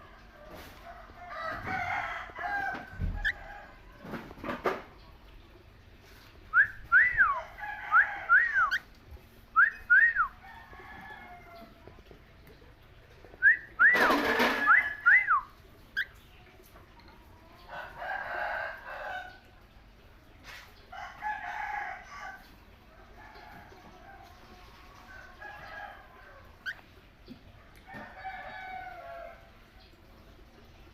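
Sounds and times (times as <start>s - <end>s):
parrots chirping and chattering: 0.5s - 3.8s, 15.7s - 17.3s, 23.5s - 27.8s.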